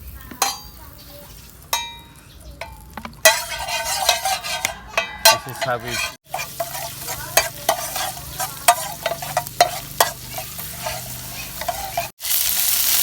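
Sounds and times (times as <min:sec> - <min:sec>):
food sizzling in hot oil: 0:00.0 - 0:13.0
metal spatula scraping a pan: 0:00.4 - 0:00.8, 0:02.6 - 0:12.2.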